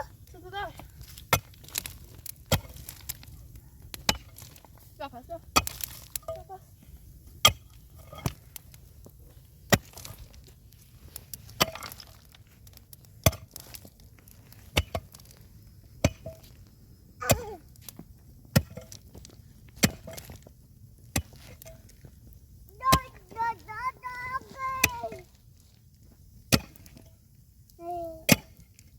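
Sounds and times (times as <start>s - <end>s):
hand tool striking wood: 19.8s - 20.3s, 28.3s - 28.6s.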